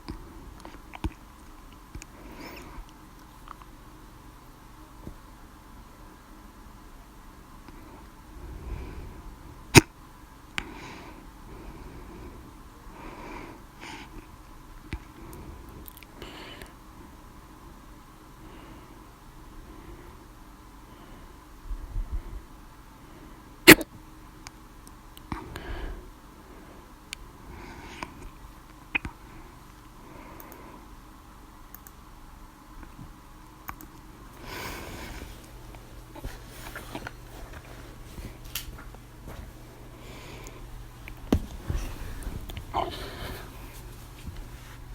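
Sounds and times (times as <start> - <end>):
soft breathing: 7.6 - 9.7, 10.6 - 14.4, 15.0 - 17.2, 18.3 - 23.6, 25.3 - 28.4, 29.2 - 31.1, 34.3 - 44.9
loud sharp hiccup: 23.7 - 23.9
faint clicks: 30.4 - 30.6, 31.7 - 32.0, 33.6 - 34.1
person hiccupping: 41.3 - 43.8.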